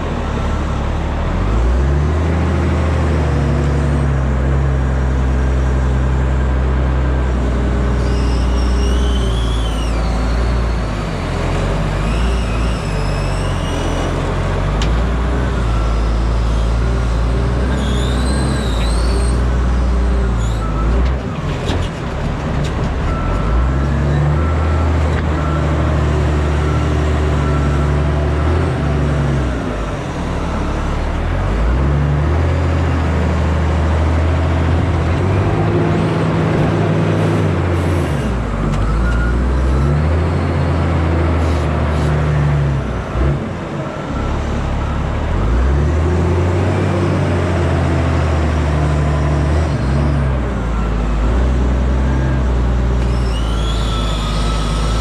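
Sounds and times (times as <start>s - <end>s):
diesel truck engine under load: 0.0s - 55.0s
cab creaks and squeaks: 8.0s - 14.3s, 17.6s - 19.7s, 20.3s - 24.4s, 53.0s - 55.0s.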